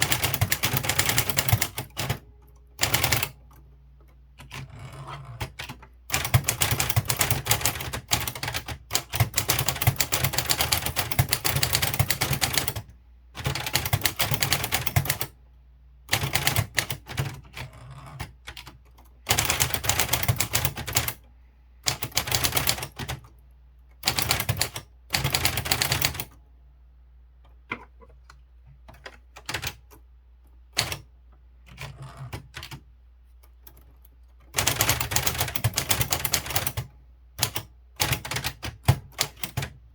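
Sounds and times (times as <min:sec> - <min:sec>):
manual typewriter key strikes: 0:00.0 - 0:02.2, 0:21.9 - 0:23.3, 0:34.4 - 0:39.8.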